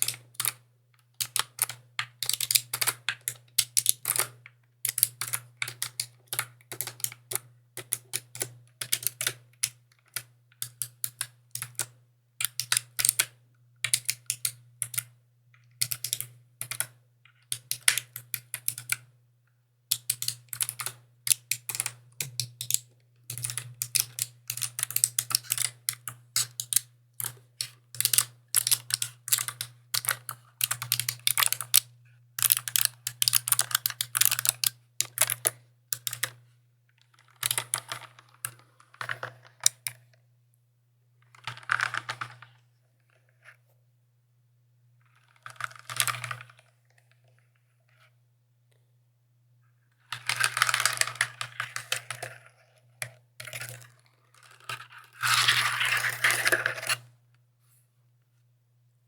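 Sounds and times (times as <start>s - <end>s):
mechanical keyboard typing: 0.0s - 0.6s, 1.2s - 15.1s, 15.7s - 19.0s, 19.9s - 36.4s, 37.4s - 40.0s.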